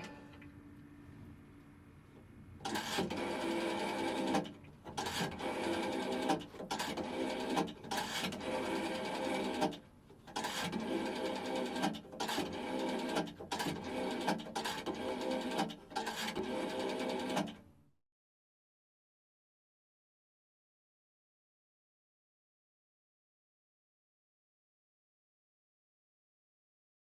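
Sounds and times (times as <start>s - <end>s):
rotary dial whirring and clicking: 2.6s - 17.6s.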